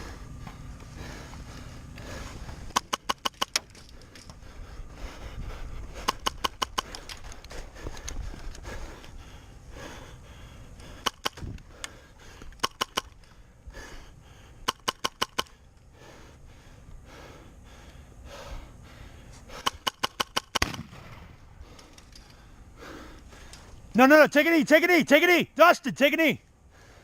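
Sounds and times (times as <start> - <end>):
airsoft guns firing in bursts: 19.6 - 21.4.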